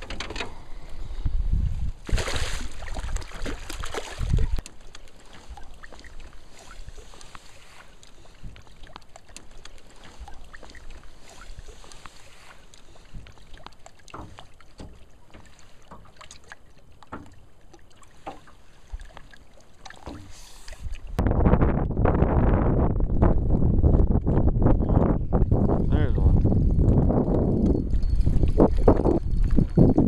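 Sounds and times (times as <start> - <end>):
knocks and handling in a boat: 0.0 - 1.4, 2.8 - 21.3
low wind rumble: 0.0 - 4.6, 20.7 - 30.0
wind gust hitting microphone: 21.1 - 30.0.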